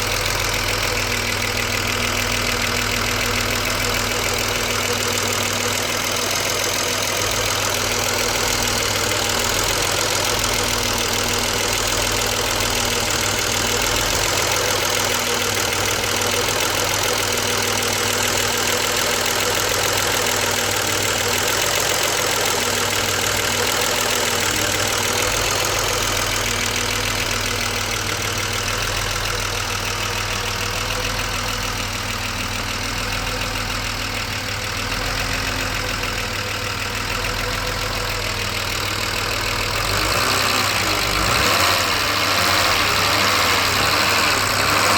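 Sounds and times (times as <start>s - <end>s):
car engine idling: 0.0s - 44.9s.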